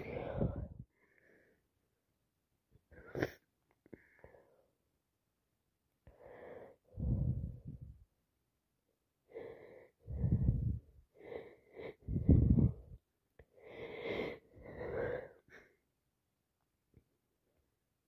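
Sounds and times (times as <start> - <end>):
congested wheezy breathing: 13.6 - 15.7.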